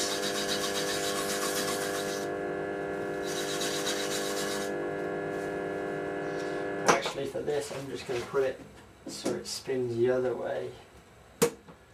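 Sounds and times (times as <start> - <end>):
shavings rubbing on spinning wood: 0.0 - 2.3, 3.2 - 4.7
lathe motor humming: 0.0 - 6.8.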